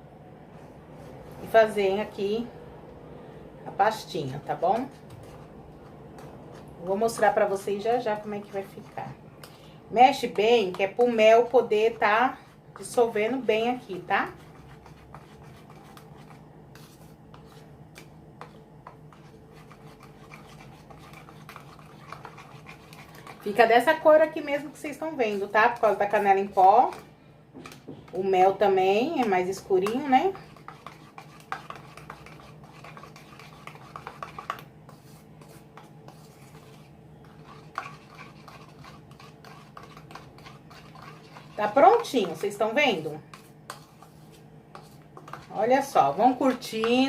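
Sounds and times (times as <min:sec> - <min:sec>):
spoon scraping a container: 0:10.1 - 0:17.7, 0:18.4 - 0:27.1, 0:29.1 - 0:47.0.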